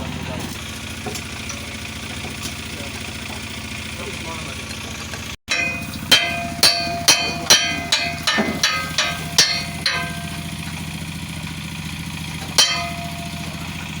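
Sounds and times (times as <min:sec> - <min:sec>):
engine hum: 0:00.0 - 0:14.0
hammer blows on metal: 0:05.5 - 0:10.6, 0:12.4 - 0:13.7.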